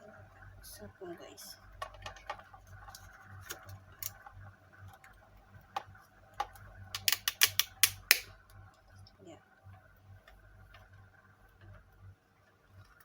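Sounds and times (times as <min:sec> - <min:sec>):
plastic holder clicking: 0:06.4 - 0:08.3.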